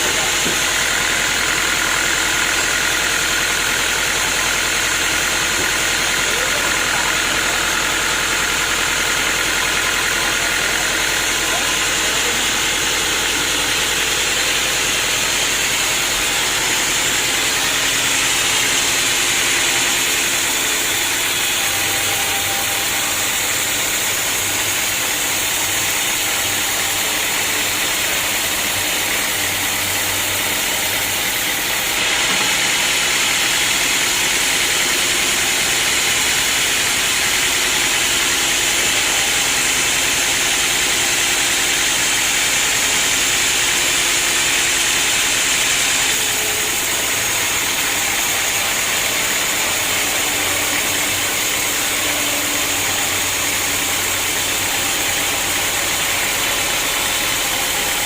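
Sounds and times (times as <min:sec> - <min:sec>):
sawmill saw running: 0:00.0 - 0:58.0.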